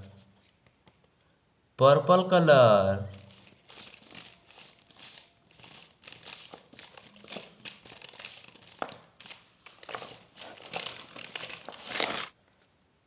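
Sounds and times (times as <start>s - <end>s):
crinkling and rustling: 3.1s - 12.7s.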